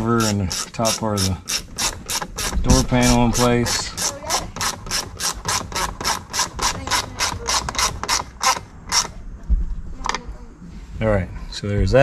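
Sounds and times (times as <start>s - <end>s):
ratchet wrench clicking: 0.0s - 9.1s
dull low thump: 9.4s - 9.9s.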